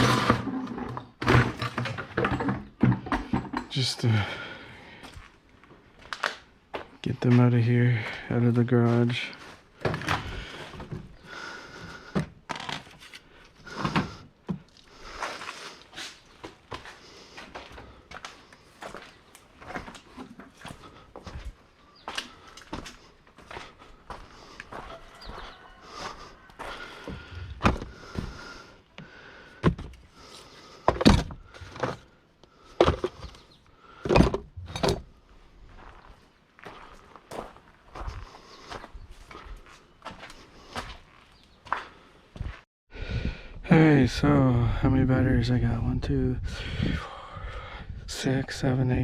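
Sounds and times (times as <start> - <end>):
heavy items clunking into car: 0.0 - 3.9, 30.8 - 32.0
scrap clunking and knocking: 0.0 - 4.0, 24.7 - 28.5.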